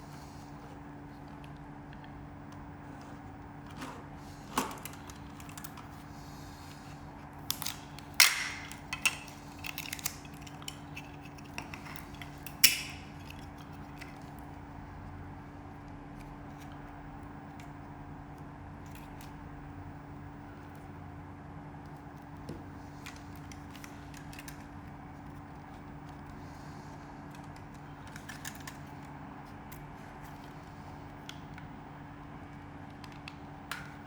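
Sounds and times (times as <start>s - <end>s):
steady low hum: 0.0s - 34.0s
plastic packaging clicks and taps: 7.4s - 14.3s.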